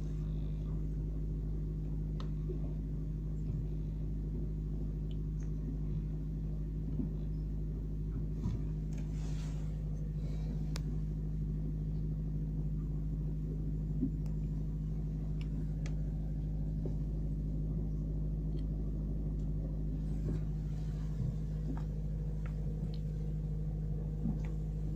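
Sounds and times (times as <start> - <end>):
low machine hum: 0.0 - 24.9
faint clicks: 10.7 - 10.9, 15.4 - 16.0.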